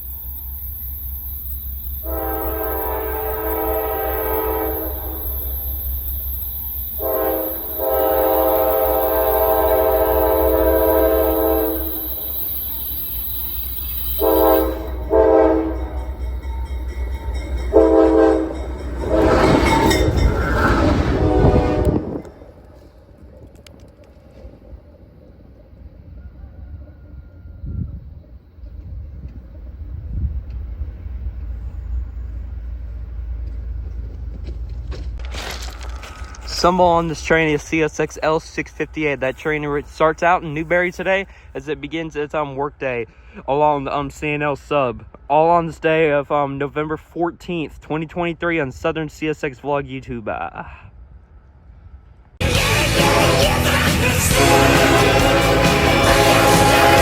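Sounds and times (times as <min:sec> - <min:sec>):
train rolling overhead rumble: 0:00.0 - 0:57.0
locomotive air horn blasts: 0:01.9 - 0:05.8, 0:06.9 - 0:12.4, 0:14.0 - 0:22.5, 0:52.4 - 0:57.0.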